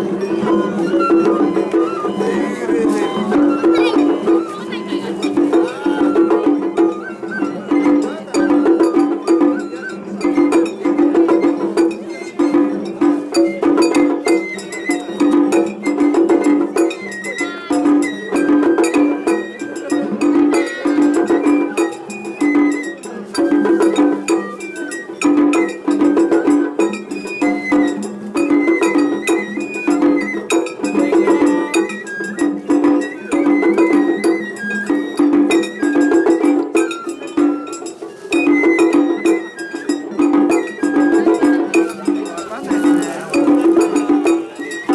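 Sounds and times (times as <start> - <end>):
high bamboo flute melody: 0.0 - 44.9
taiko drums beating: 0.0 - 44.9.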